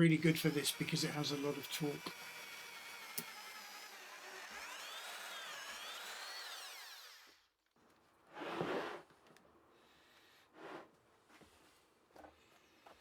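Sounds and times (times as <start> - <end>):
drill motor whine: 0.0 - 7.5.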